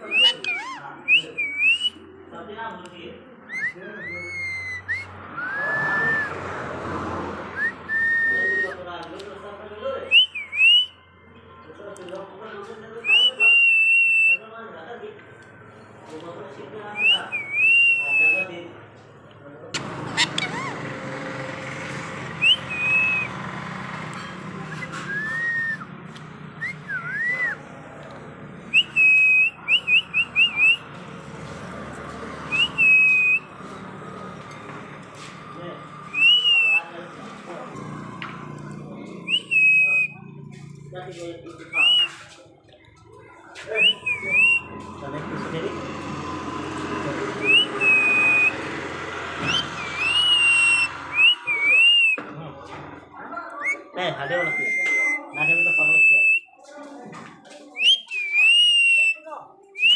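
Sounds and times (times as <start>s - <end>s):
parrot whistling: 0.0s - 2.0s, 3.5s - 6.4s, 17.0s - 18.4s, 19.8s - 20.9s, 22.4s - 23.3s, 24.7s - 25.9s, 26.6s - 27.6s, 28.7s - 30.8s, 32.5s - 33.5s, 36.0s - 36.9s, 39.3s - 40.2s, 43.8s - 44.8s, 47.4s - 48.6s, 49.4s - 52.2s, 53.6s - 56.5s, 57.8s - 59.2s
high whistled notes: 35.9s - 36.9s, 43.8s - 44.8s, 47.4s - 48.6s, 49.5s - 52.2s, 53.6s - 56.5s.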